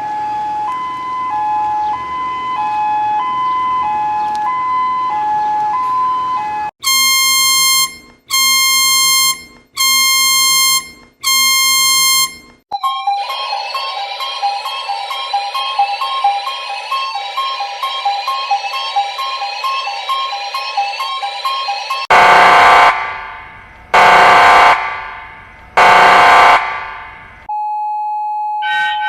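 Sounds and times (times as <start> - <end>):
two-tone hi-lo siren: 0.0 - 29.0
rising warbling alarm: 6.2 - 27.5
long buzzy beeps: 6.8 - 12.6.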